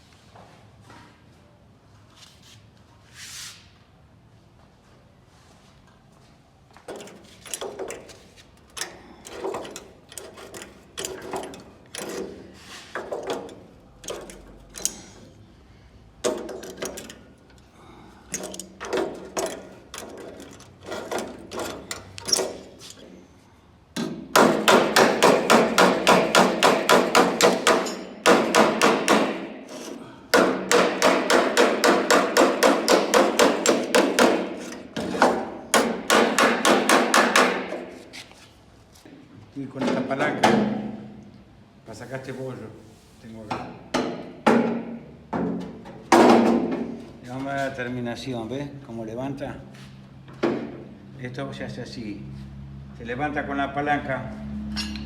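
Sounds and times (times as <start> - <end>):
hammer striking sheet metal: 24.0 - 38.0.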